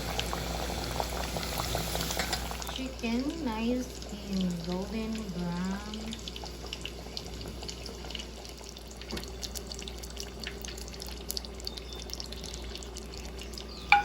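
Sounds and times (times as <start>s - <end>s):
oil crackling and popping: 0.0s - 3.4s, 4.4s - 14.0s
cutlets frying in hot oil: 0.0s - 14.0s.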